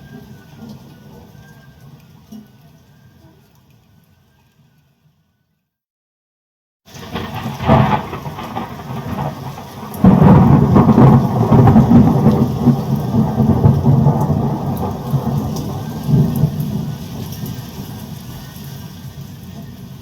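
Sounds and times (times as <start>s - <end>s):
rain falling: 0.0s - 4.5s, 6.9s - 20.0s
thunder rumbling: 6.9s - 18.4s.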